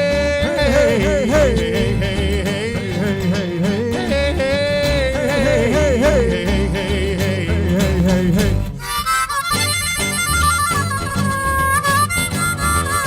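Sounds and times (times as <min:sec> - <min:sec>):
pulsing bass line: 0:00.0 - 0:08.8
person singing wavering melody: 0:00.0 - 0:09.1
live string band playing: 0:00.0 - 0:13.0.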